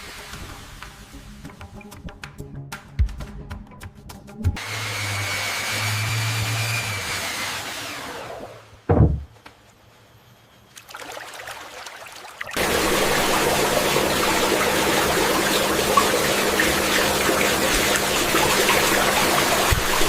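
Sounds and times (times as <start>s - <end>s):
low thump: 8.9s - 9.3s
running water: 10.8s - 20.0s.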